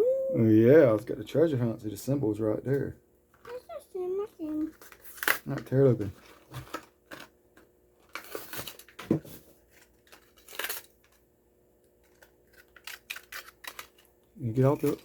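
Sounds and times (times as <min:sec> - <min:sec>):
plastic crackling: 0:08.0 - 0:11.2, 0:12.0 - 0:15.0
cardboard ripping: 0:08.1 - 0:09.0.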